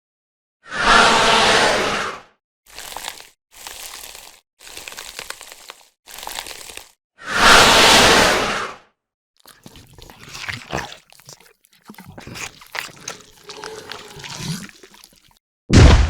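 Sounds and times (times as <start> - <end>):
clicks crunches and rustles: 2.7 - 7.0, 9.5 - 15.3.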